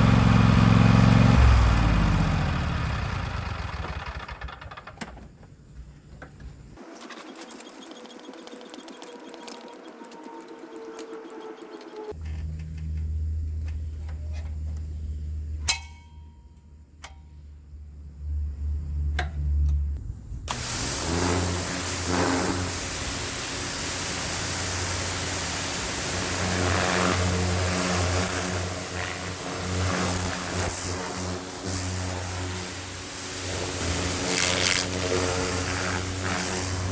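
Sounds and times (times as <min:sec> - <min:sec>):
tractor engine running: 0:00.0 - 0:05.4.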